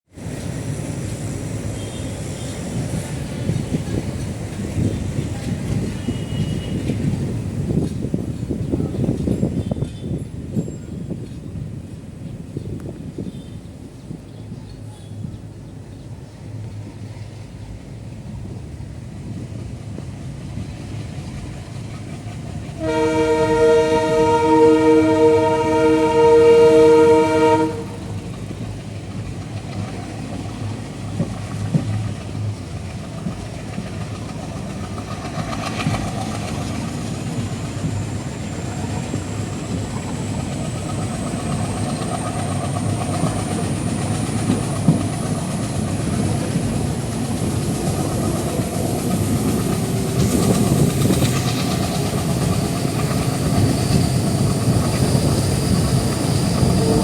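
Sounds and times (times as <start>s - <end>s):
train wheels rumbling on track: 0.0s - 57.0s
train horn chord: 22.8s - 28.2s, 56.6s - 57.0s.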